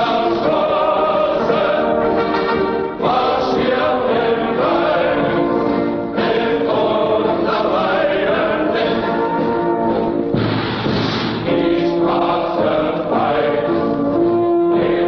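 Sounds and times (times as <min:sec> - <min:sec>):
choir singing an anthem: 0:00.0 - 0:10.1, 0:11.4 - 0:15.0.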